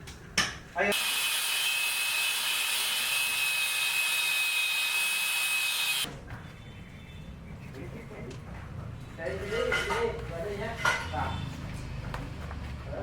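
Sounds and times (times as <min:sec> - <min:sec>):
power tool whining: 0:00.9 - 0:06.1.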